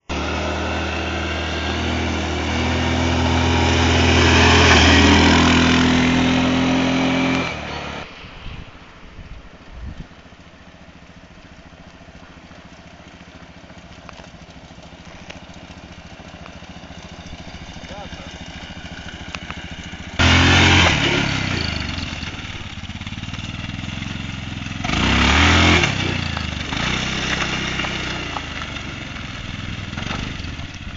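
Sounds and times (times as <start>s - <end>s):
atv engine running: 0.0s - 30.9s.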